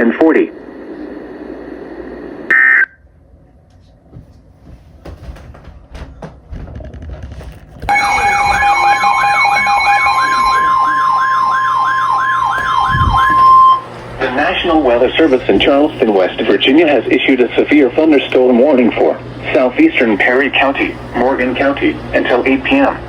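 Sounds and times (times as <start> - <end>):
digital data tones: 7.9 - 11.5
siren tone sweeping up and down: 7.9 - 13.9
steady beep: 7.9 - 14.6.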